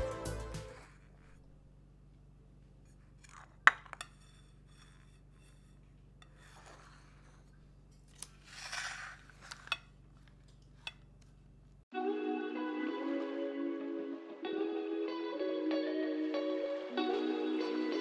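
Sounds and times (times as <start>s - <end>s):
soft scraping rustles: 2.7s - 10.9s.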